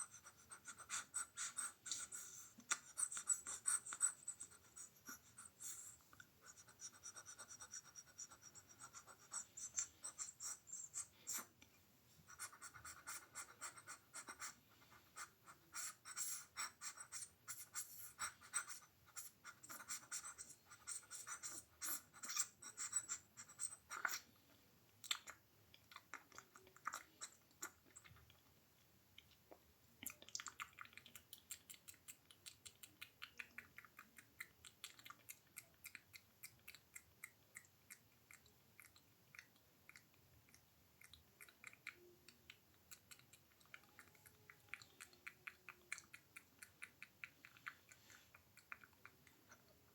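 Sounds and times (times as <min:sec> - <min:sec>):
mouth clicks and smacks: 0:00.6 - 0:11.7, 0:15.2 - 0:28.5, 0:29.1 - 0:49.9.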